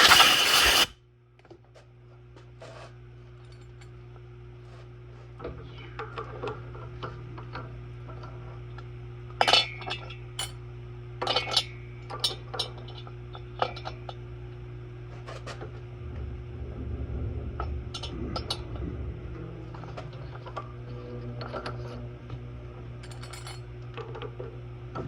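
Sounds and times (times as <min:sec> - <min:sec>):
low machine hum: 0:01.0 - 0:25.0
low rumble: 0:14.3 - 0:24.0.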